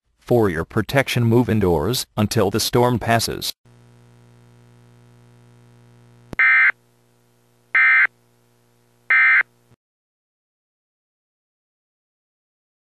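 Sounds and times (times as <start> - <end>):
faint steady hum: 3.1 - 9.8.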